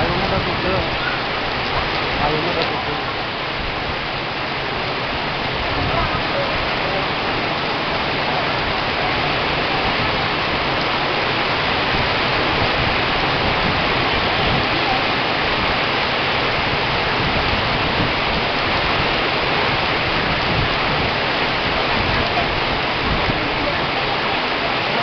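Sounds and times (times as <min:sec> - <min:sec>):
heavy rain in wind: 0:00.0 - 0:25.0.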